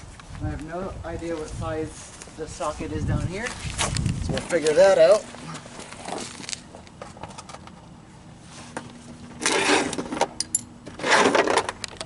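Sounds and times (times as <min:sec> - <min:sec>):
metal tools clinking and rattling: 0:10.4 - 0:10.7.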